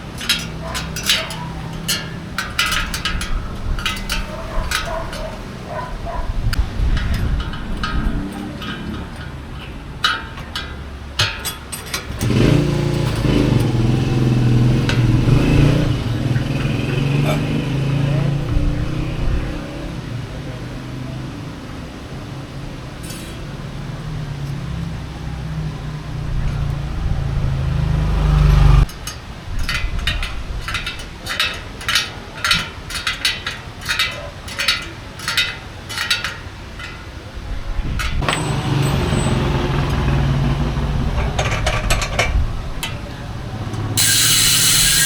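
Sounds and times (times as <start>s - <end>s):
bicycle hub ratchet clicking: 44.0s - 45.0s.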